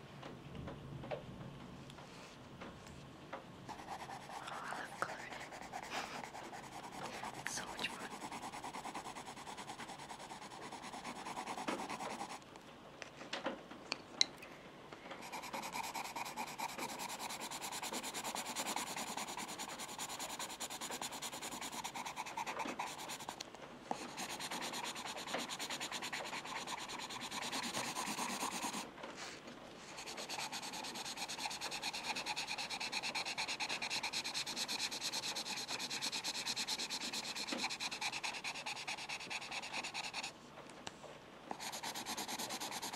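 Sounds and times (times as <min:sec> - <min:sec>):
pencil rubbing on paper: 0:03.7 - 0:12.4, 0:15.2 - 0:23.4, 0:24.0 - 0:28.9, 0:29.8 - 0:40.3, 0:41.5 - 0:42.9.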